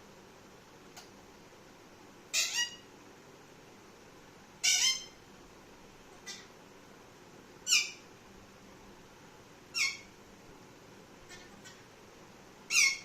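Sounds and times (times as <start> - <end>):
parrot shrill calls: 2.3 - 2.8, 4.6 - 5.2, 7.6 - 8.0, 9.7 - 10.1, 12.7 - 13.0.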